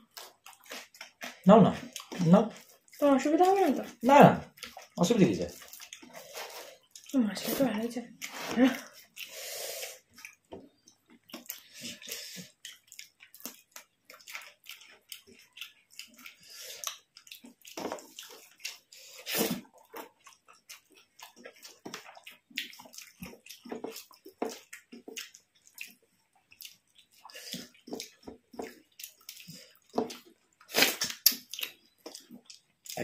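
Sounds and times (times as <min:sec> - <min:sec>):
people chewing and smacking: 0:00.0 - 0:33.0
small clicks and squelches: 0:10.0 - 0:19.1.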